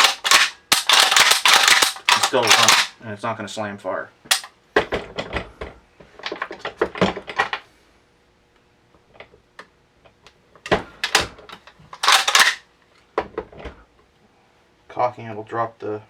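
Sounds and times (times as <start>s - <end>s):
shotgun action clicking: 0.0s - 2.9s.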